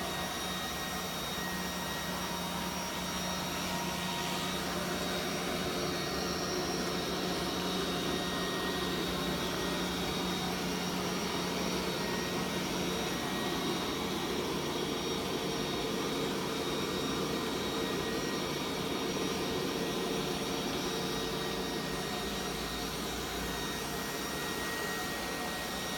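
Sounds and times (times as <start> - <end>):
robot vacuum cleaner whirring: 0.0 - 25.9.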